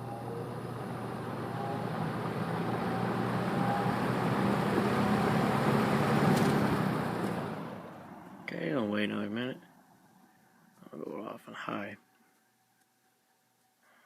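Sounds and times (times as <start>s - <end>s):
box fan motor hum: 0.0s - 8.7s.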